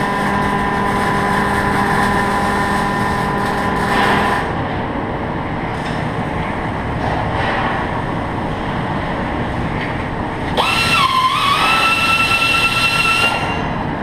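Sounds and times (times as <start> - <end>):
welding arc crackling hiss: 0.0 - 4.5
factory machine noise: 0.0 - 14.0
steady whine: 0.0 - 14.0.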